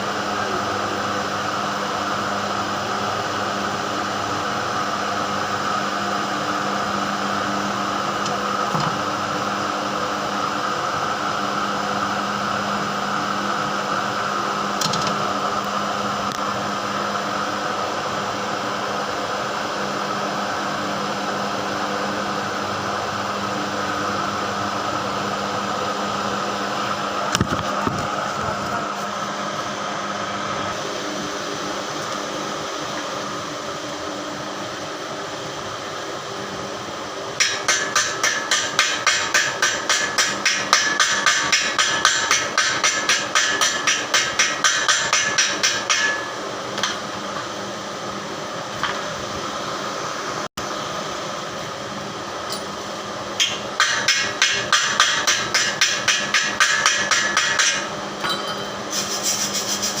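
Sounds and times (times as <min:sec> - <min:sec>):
steady background hum: 0:00.0 - 1:00.0.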